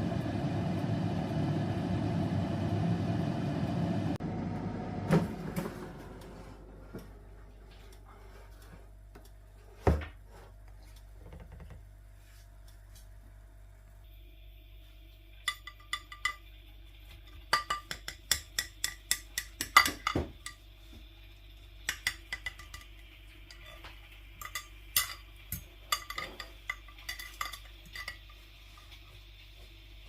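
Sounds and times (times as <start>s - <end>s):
utensils clinking on a dish: 15.5s - 16.4s, 17.2s - 20.6s, 21.9s - 28.4s.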